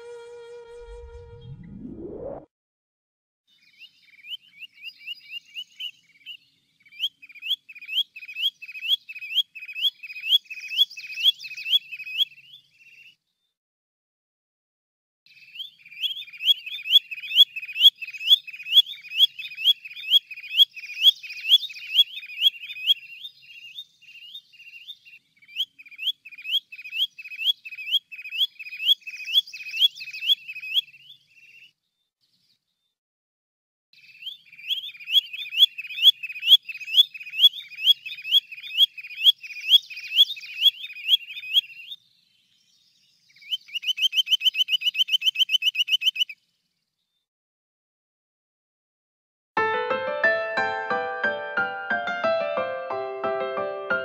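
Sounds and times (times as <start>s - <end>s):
sandpiper calling: 43.4s - 46.4s.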